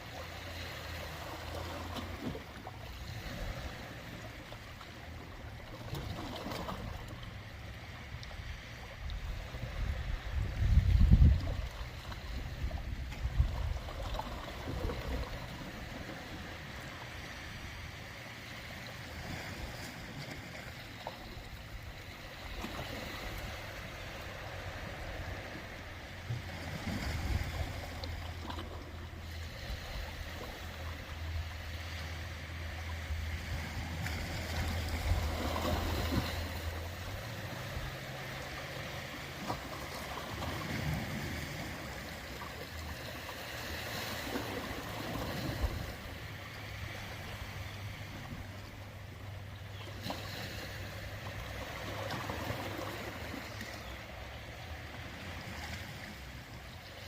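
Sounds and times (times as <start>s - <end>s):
ocean waves washing: 0.0s - 57.0s
steady low rumble: 0.9s - 43.0s.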